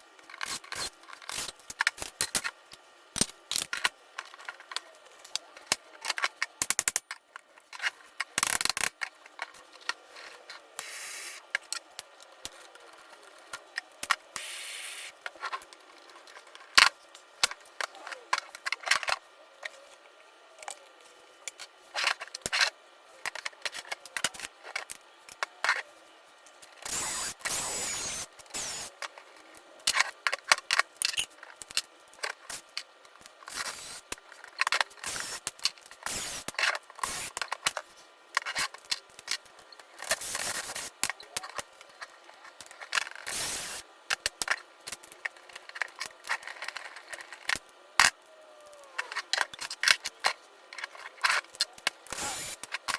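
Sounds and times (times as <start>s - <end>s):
hand tools clicking on plastic parts: 48.8s - 52.9s.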